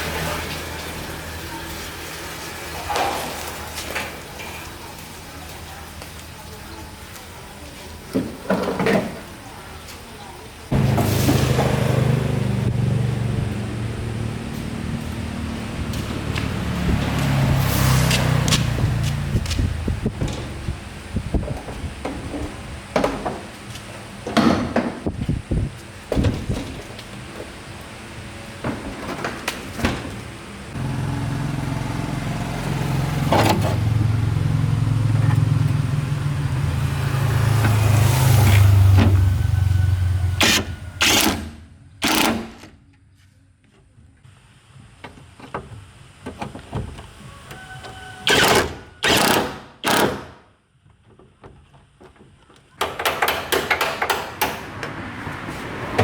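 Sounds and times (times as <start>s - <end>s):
engine running: 10.7s - 21.3s, 30.2s - 42.5s.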